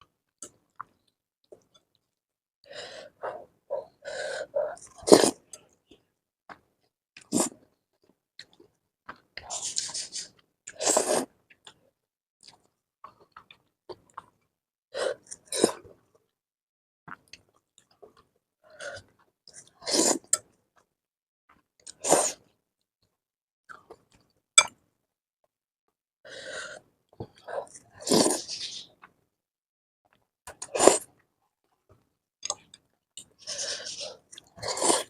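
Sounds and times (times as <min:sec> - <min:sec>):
person chewing and slurping: 0:33.2 - 0:35.0.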